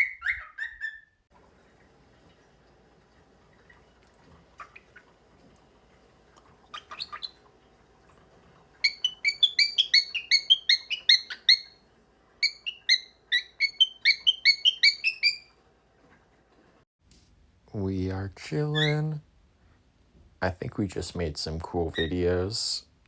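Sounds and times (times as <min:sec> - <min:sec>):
cockatiel chirping: 0:00.0 - 0:01.2, 0:08.8 - 0:11.8, 0:12.4 - 0:15.4, 0:18.7 - 0:19.0.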